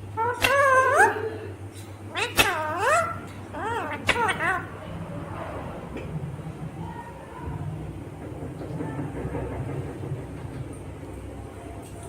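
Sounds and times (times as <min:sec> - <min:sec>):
parakeet speech-like call: 0:00.2 - 0:01.3, 0:02.1 - 0:04.9.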